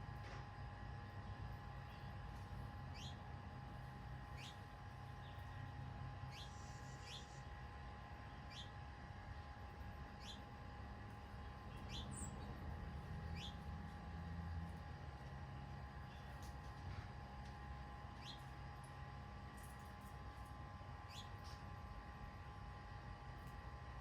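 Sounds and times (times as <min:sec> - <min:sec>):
faint hum: 0:00.0 - 0:24.0
bird chirping: 0:10.2 - 0:10.4, 0:11.7 - 0:12.5, 0:13.3 - 0:13.6.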